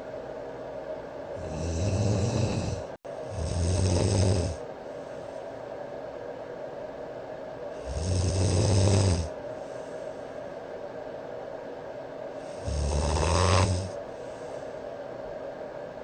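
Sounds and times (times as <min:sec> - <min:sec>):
man snoring: 0:01.4 - 0:04.6, 0:07.8 - 0:09.4, 0:12.4 - 0:14.0.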